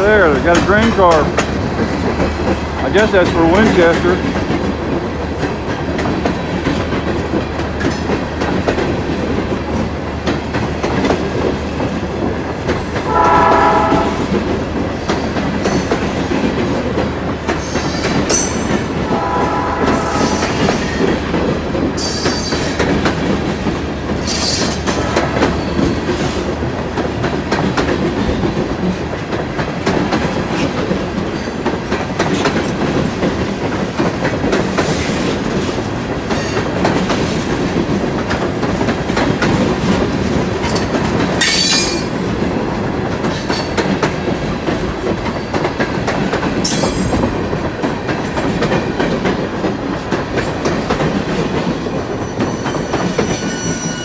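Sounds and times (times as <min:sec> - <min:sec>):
train wheels clacking over rail joints: 0:00.0 - 0:54.0
train horn blasts: 0:13.0 - 0:14.4, 0:18.9 - 0:21.1.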